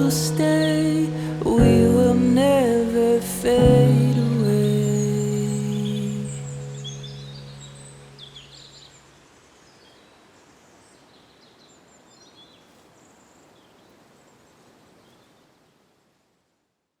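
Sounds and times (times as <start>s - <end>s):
steady hiss: 0.0s - 11.1s.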